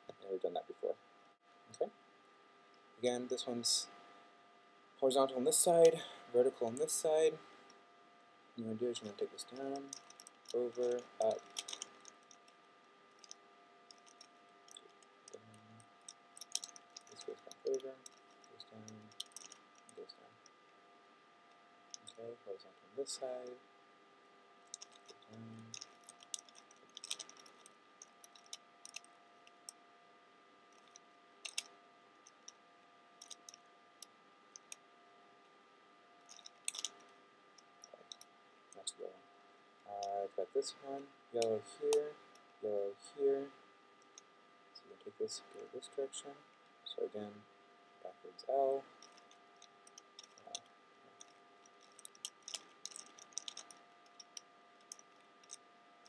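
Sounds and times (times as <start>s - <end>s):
puzzle cube clicking: 31.5s - 31.7s.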